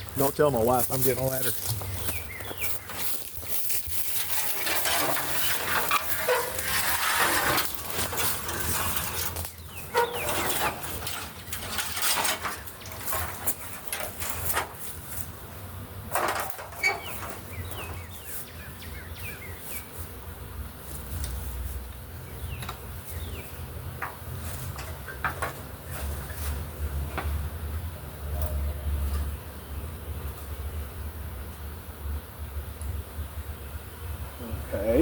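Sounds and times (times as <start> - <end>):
rustling and clattering: 0.0 - 15.5, 16.1 - 18.5, 24.0 - 27.4
bird chirps: 1.8 - 3.0
bee swarm buzzing: 28.7 - 35.0.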